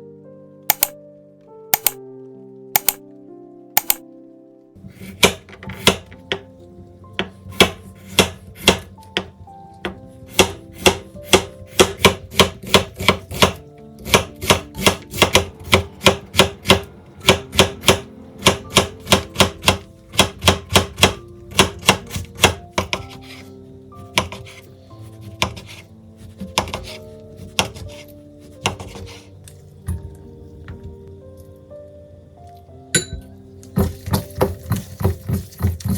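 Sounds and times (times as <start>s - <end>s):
knife chopping on cutting board: 5.0s - 6.4s, 7.2s - 9.3s, 10.3s - 23.4s, 24.1s - 29.2s.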